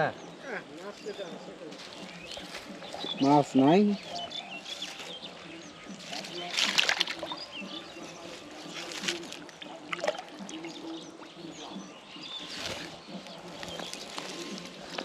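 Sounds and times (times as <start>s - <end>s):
small birds chirping: 0.0s - 15.0s
water splashes: 5.9s - 11.0s.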